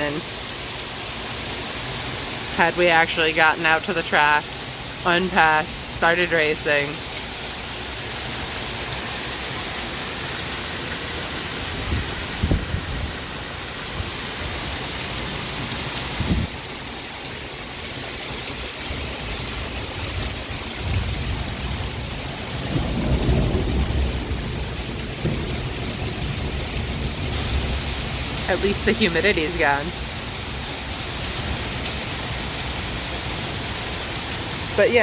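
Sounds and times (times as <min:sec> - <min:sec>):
heavy rain pouring: 0:00.0 - 0:35.0
thunder rumble: 0:11.0 - 0:14.8, 0:18.8 - 0:30.7.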